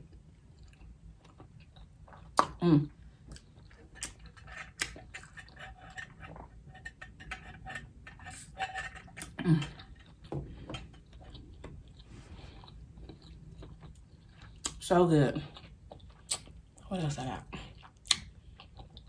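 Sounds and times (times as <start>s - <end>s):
person chewing wet mouth clicks: 17.8s - 19.0s.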